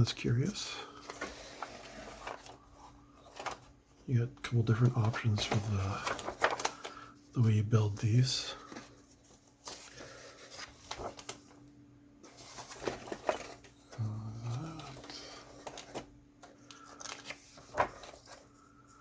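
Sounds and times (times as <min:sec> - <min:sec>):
pages rustling: 0:00.9 - 0:03.8, 0:04.7 - 0:11.6, 0:12.2 - 0:18.9
brief low vocal sound: 0:14.0 - 0:15.0.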